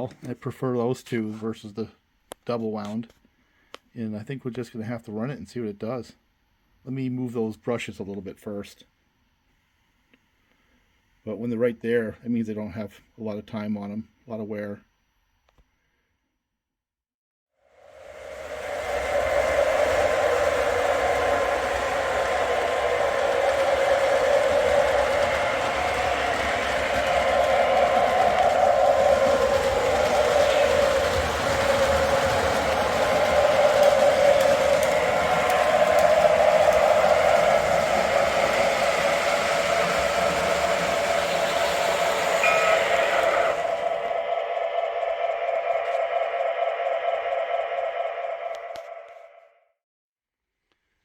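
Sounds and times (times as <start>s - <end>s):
train wheels rolling on track: 17.8s - 49.4s
steady hum: 17.9s - 49.5s
model train motor whine: 18.0s - 49.2s.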